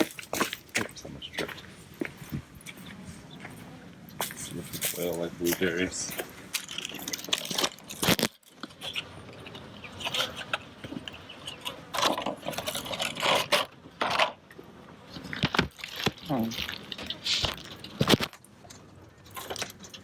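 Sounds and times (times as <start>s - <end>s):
handling noise clicking and rattling: 4.1s - 20.0s.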